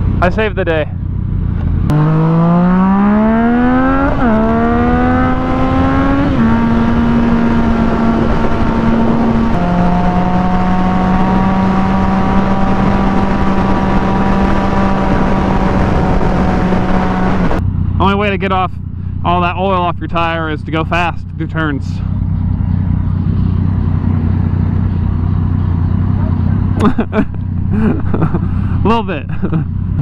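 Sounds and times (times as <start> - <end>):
motorcycle engine accelerating: 0.0 - 30.0
wind noise: 2.7 - 17.7.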